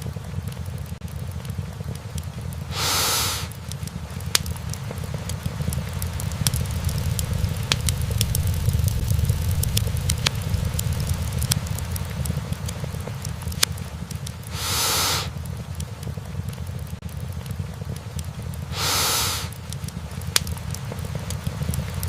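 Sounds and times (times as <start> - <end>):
logs popping and snapping: 0.0 - 22.0
wood fire burning: 0.0 - 22.0
short hiss: 2.7 - 3.6, 14.5 - 15.4, 18.7 - 19.6.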